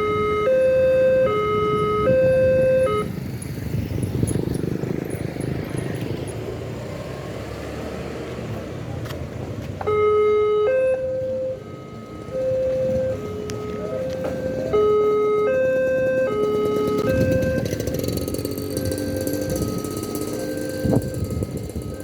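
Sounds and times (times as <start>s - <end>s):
level crossing alarm two-tone: 0.0s - 3.1s, 9.9s - 22.0s
passing road traffic: 0.0s - 22.0s.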